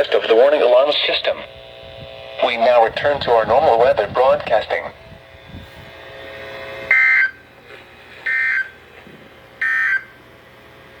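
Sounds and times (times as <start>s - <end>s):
two-tone buzzing data bursts: 6.7s - 7.4s, 8.2s - 8.8s, 9.6s - 10.2s.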